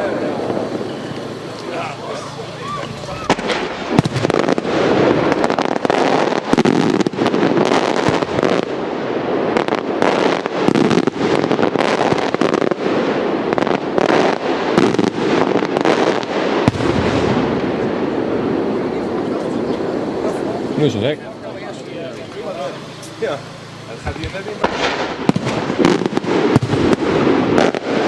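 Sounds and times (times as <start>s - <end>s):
firework bangs: 0.0s - 28.0s
fireworks crackling: 0.0s - 28.0s.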